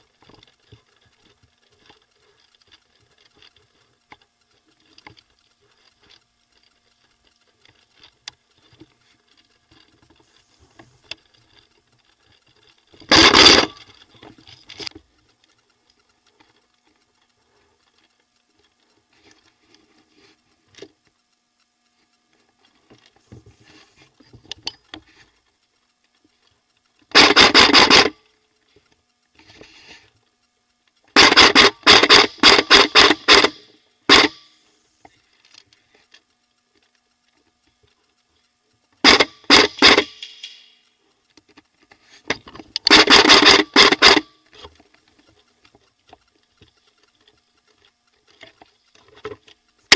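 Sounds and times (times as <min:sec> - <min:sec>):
airsoft gun firing: 0:39.0 - 0:40.7.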